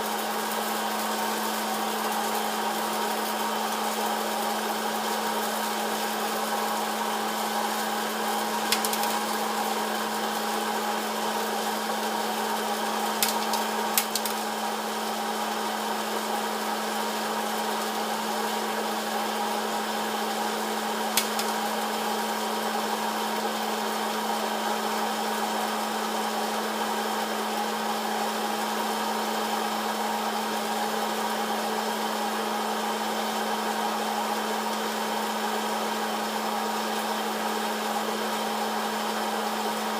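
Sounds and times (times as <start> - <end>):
popcorn popper fan humming: 0.0 - 39.9
popcorn kernels popping: 7.4 - 10.5, 12.4 - 14.9, 20.9 - 22.4.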